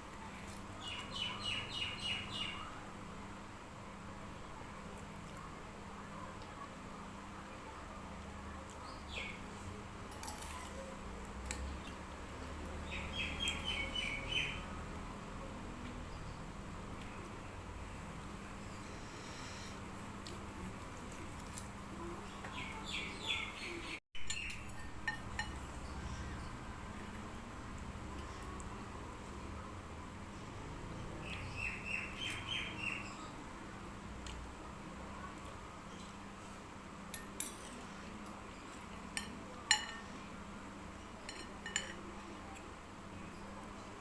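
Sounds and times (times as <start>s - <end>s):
utensils clinking against a dish: 24.2s - 25.8s, 39.1s - 40.1s, 41.2s - 42.6s.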